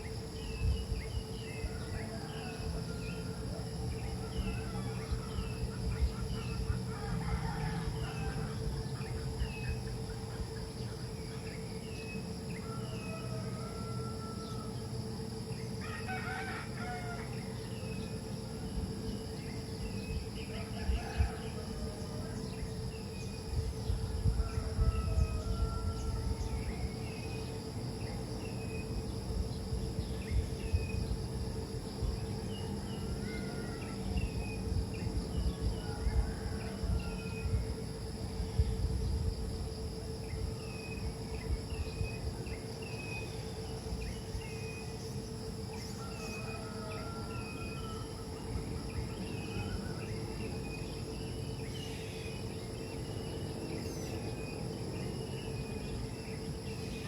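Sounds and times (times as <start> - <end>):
faint steady hum: 0.0 - 57.0
insects droning: 0.0 - 57.0.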